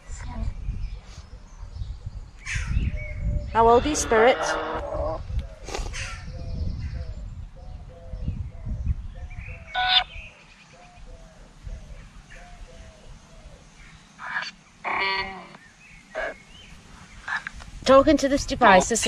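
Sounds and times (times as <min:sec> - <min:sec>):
low rumble: 0:01.6 - 0:05.6
chopped radio tones: 0:03.6 - 0:05.2, 0:09.7 - 0:10.2, 0:14.3 - 0:15.6, 0:16.2 - 0:16.4.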